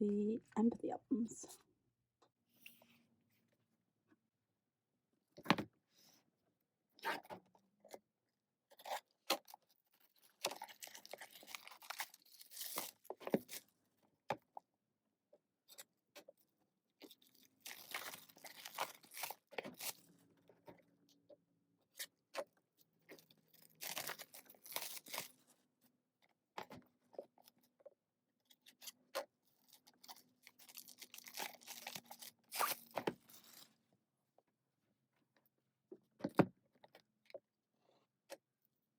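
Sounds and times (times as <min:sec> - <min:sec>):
plastic packaging crinkling and tearing: 0:08.8 - 0:13.6, 0:17.1 - 0:20.1, 0:23.2 - 0:25.4, 0:29.6 - 0:33.7.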